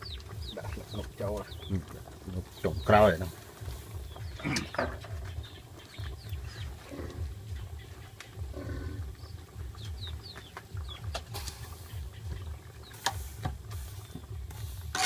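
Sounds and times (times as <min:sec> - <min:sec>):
chickens clucking: 0:00.0 - 0:15.0
small birds chirping: 0:00.0 - 0:15.0.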